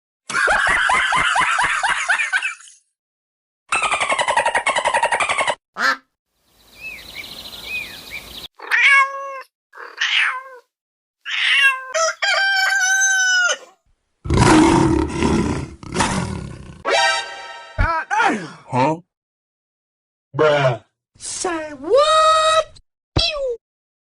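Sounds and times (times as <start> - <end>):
cat-like calls: 8.6 - 12.0
loud rough roar: 14.3 - 16.8.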